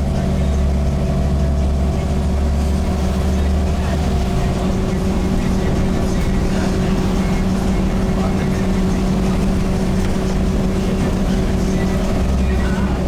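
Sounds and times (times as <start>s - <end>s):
bus diesel engine running: 0.0s - 13.0s.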